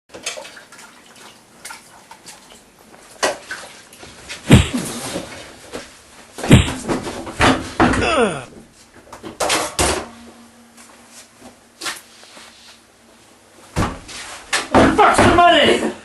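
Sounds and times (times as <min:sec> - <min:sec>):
loud bangs with rumble: 0:06.5 - 0:06.8.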